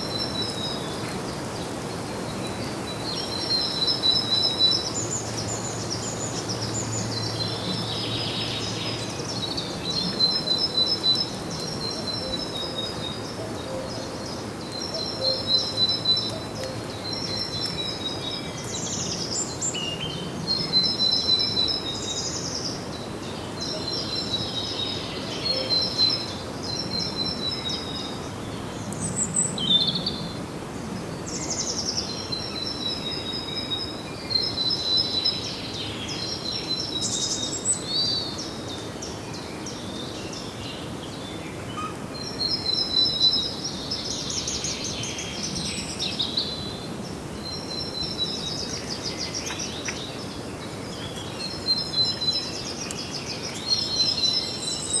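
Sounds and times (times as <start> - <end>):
outdoor background hiss: 0.0 - 55.0
songbirds trilling: 31.0 - 55.0.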